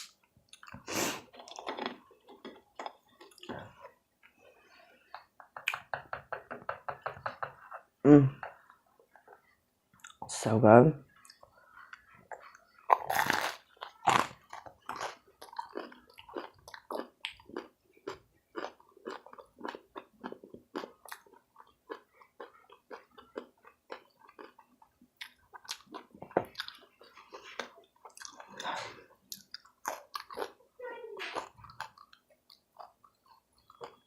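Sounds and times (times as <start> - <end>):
person chewing: 0.0 - 5.9, 8.4 - 10.2, 11.1 - 30.6, 31.3 - 34.0
crunchy food bites: 12.9 - 24.6.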